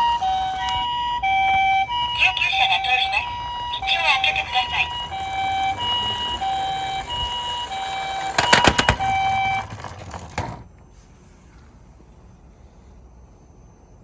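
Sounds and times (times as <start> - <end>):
toy electronic two-tone siren: 0.0 - 10.6
clattering knocks: 4.8 - 10.8.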